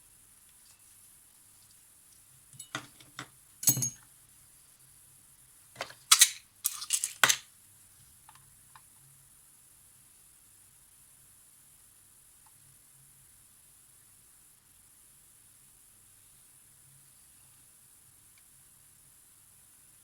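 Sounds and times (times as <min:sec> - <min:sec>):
small hard objects clinking: 0:06.1 - 0:07.4.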